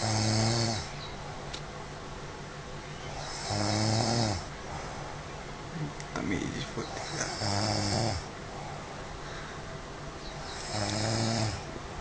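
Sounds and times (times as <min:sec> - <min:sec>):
person snoring: 0:00.0 - 0:00.9, 0:03.2 - 0:04.5, 0:07.0 - 0:08.3, 0:10.6 - 0:11.7.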